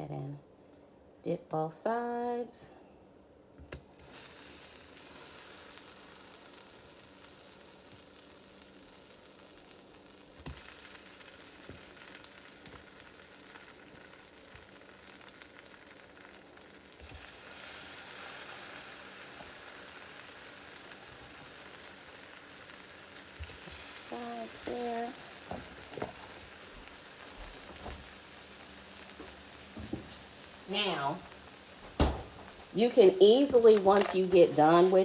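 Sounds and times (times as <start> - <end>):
bread frying in butter sizzling: 3.8 - 35.0.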